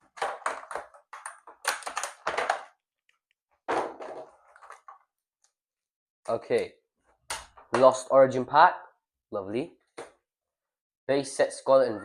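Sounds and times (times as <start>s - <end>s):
packaging crinkling and tapping: 0.0s - 3.2s.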